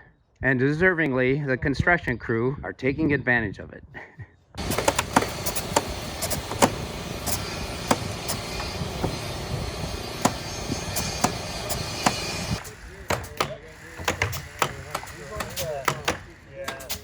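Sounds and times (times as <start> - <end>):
sharp knocks and clicks: 4.6 - 17.0
steady motor running: 4.6 - 17.0.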